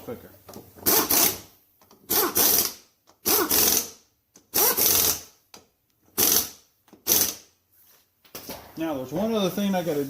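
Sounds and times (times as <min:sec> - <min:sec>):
impact wrench bursts: 0:00.8 - 0:05.4, 0:06.1 - 0:07.5.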